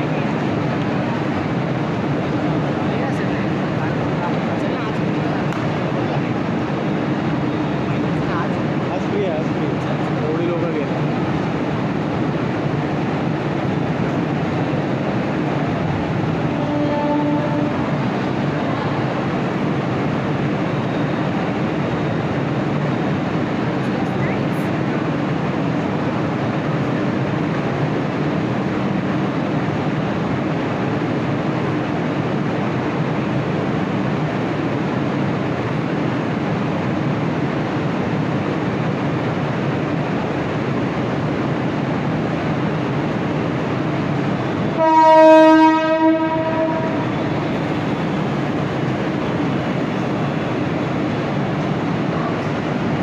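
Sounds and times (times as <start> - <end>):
electric train rumbling: 0.0 - 53.0
train horn: 16.4 - 18.0, 44.7 - 47.3.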